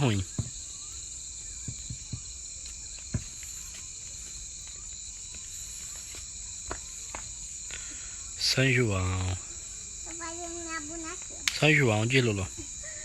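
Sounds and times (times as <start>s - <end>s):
bonfire wood cracking: 0.0s - 7.9s
crickets chirping: 0.0s - 13.0s.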